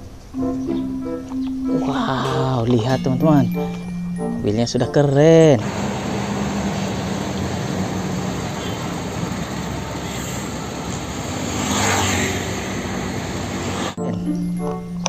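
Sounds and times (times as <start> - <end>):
engine-like drone: 5.6 - 14.0.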